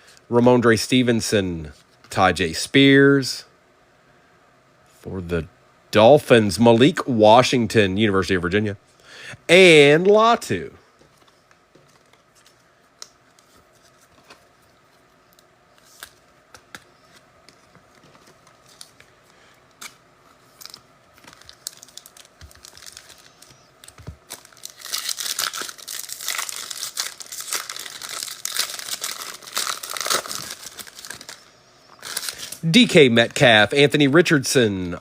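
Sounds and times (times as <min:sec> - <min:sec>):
foil wrapper crinkling: 0:19.8 - 0:32.7.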